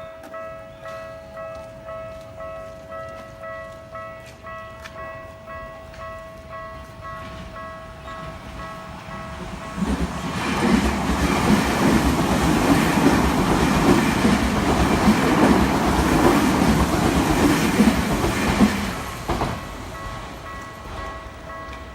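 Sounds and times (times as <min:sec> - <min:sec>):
crossing warning bell: 0:00.0 - 0:21.9
train wheels clacking over rails: 0:07.1 - 0:21.9.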